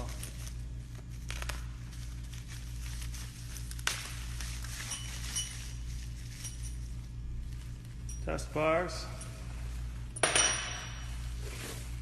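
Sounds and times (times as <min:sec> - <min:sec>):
packing material crinkling: 0:00.0 - 0:08.1
steady low hum: 0:00.0 - 0:12.0.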